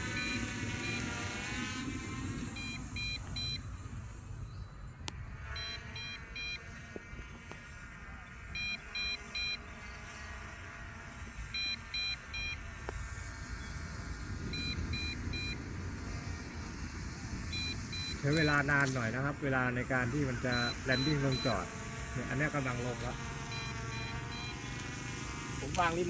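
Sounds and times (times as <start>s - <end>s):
drone motors humming: 0.0s - 26.0s
remote controller warning beeps: 0.1s - 1.2s, 2.5s - 3.7s, 5.6s - 6.6s, 8.6s - 9.6s, 11.6s - 12.6s, 14.6s - 15.6s, 17.5s - 19.1s, 20.3s - 21.6s, 23.0s - 24.7s.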